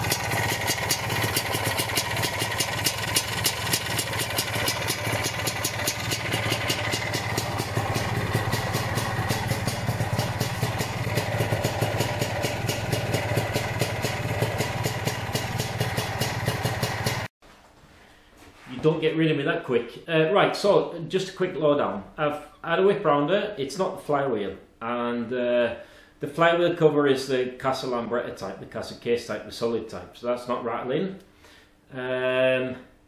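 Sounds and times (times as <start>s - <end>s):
scooter engine idling: 0.0s - 17.3s.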